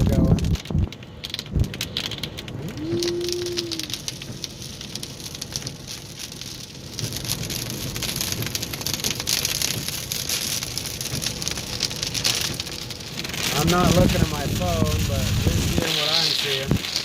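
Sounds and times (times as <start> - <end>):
rain pelting a car: 0.0 - 17.0.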